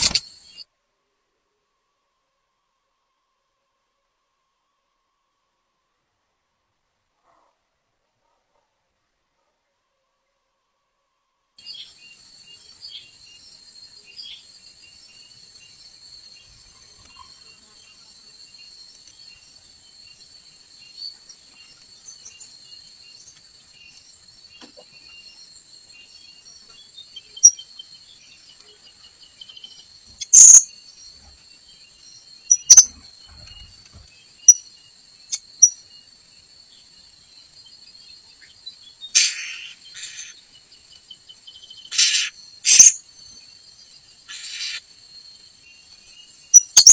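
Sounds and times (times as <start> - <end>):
shrill parrot calls: 30.3 - 30.6, 39.2 - 40.4, 41.9 - 43.0, 44.3 - 44.8
high-pitched insect drone: 39.2 - 40.4, 41.9 - 43.0, 44.3 - 44.9.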